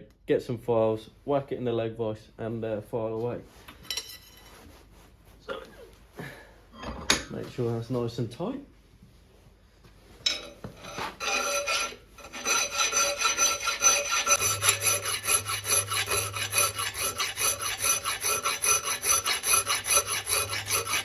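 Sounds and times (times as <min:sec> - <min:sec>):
file rasping on steel: 0:10.8 - 0:21.0.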